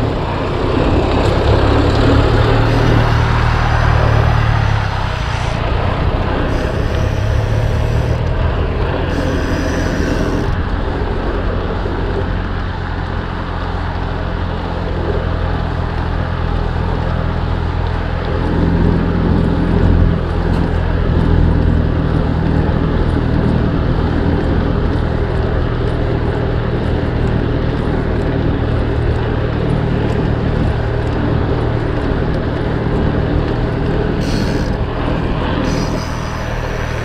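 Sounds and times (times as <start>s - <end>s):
steady low hum: 0.0s - 13.5s, 26.8s - 37.0s
bike tyres rolling on pavement: 0.0s - 37.0s
short hiss: 2.5s - 5.6s, 6.5s - 8.2s, 9.1s - 10.6s, 34.2s - 34.8s
faint ticking: 6.4s - 8.4s, 9.0s - 10.7s, 34.2s - 37.0s.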